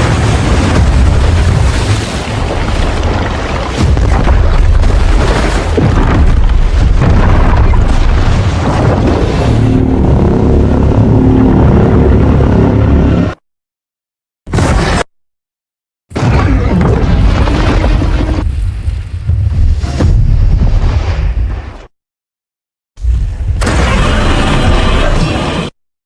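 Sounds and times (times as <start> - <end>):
heavy synthesised rumble: 6.7 - 13.4.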